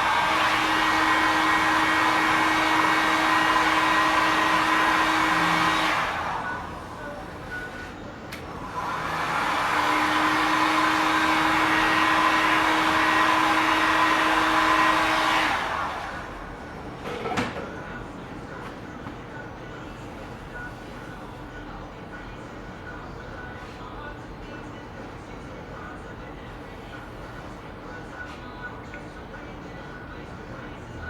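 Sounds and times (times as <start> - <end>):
hot-air blower humming: 0.0 - 22.0.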